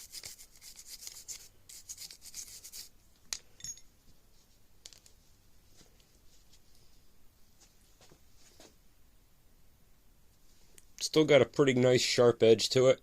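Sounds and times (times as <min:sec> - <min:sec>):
metallic ping: 0:03.6 - 0:03.9.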